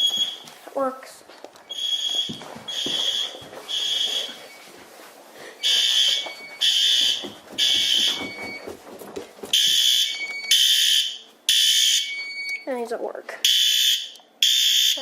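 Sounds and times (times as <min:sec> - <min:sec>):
fire alarm horn blasts: 0:01.7 - 0:04.4, 0:05.6 - 0:08.6, 0:09.6 - 0:12.6, 0:13.5 - 0:15.0.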